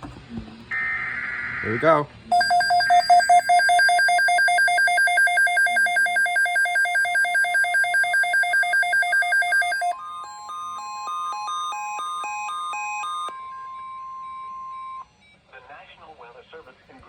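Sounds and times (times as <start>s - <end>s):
warbling electronic alert tone: 2.3s - 15.0s.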